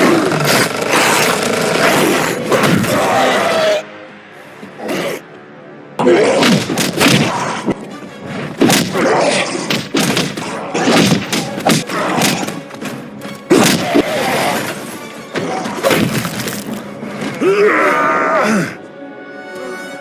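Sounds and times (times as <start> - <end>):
film score music: 0.0 - 20.0
heavy punches: 8.6 - 9.1, 9.7 - 12.6.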